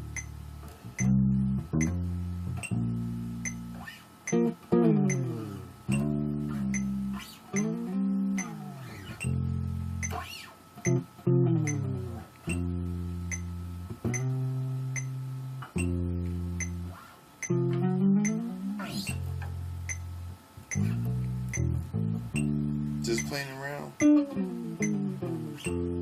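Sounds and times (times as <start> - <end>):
bass guitar low notes: 0.0 - 26.0
steady light clicking: 3.4 - 9.4, 10.0 - 11.0, 11.6 - 12.7, 14.1 - 16.0, 16.6 - 22.6.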